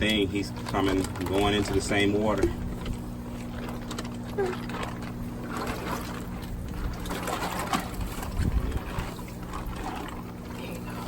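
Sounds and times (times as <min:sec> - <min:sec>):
water pump humming: 0:00.0 - 0:11.0
water sloshing and splashing: 0:00.0 - 0:11.0.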